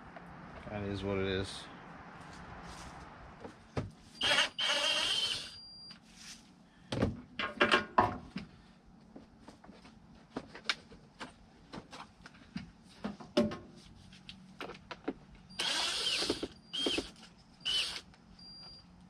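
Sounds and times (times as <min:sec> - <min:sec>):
cordless drill whirring: 0:04.2 - 0:05.6, 0:15.6 - 0:18.1.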